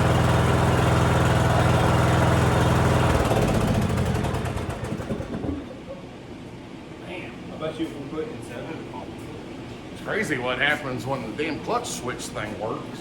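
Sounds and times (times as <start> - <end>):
riding lawn mower engine: 0.0 - 5.6.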